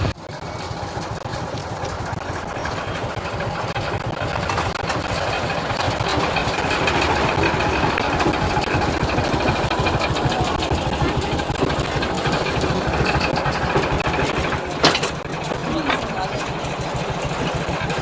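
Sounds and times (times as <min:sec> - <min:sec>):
diesel locomotive engine knocking: 0:00.0 - 0:18.0.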